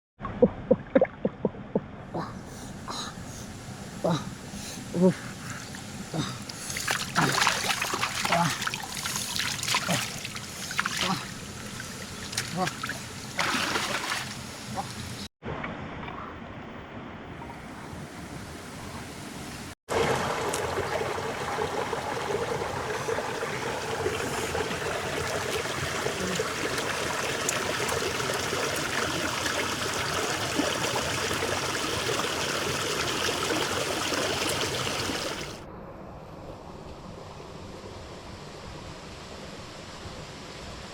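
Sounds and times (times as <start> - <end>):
running water: 3.9 - 15.3, 19.9 - 35.7.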